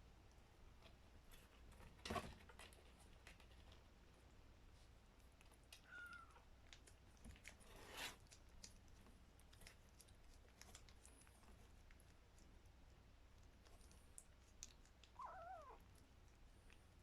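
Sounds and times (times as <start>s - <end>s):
kitten mewing: 15.1s - 15.8s.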